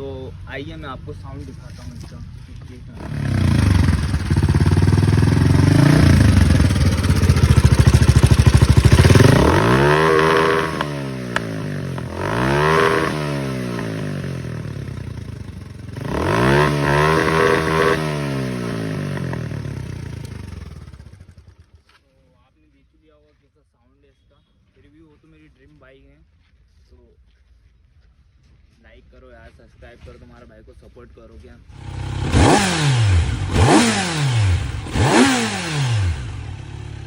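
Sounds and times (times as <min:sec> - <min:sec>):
motorcycle engine revving: 0:01.4 - 0:21.9, 0:31.7 - 0:37.0.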